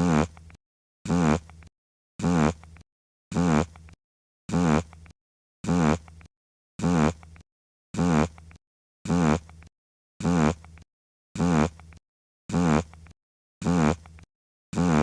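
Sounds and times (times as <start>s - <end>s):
fart sound effect: 0.0s - 0.4s, 1.1s - 1.5s, 2.2s - 2.6s, 3.3s - 3.8s, 4.5s - 5.0s, 5.6s - 6.2s, 6.8s - 7.2s, 8.0s - 8.4s, 9.1s - 9.6s, 10.2s - 10.8s, 11.4s - 11.8s, 12.5s - 13.0s, 13.6s - 15.0s.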